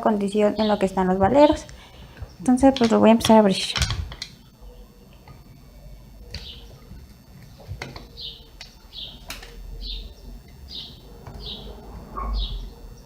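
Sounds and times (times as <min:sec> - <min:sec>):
small bird chirping: 0:06.4 - 0:06.8, 0:08.0 - 0:13.0.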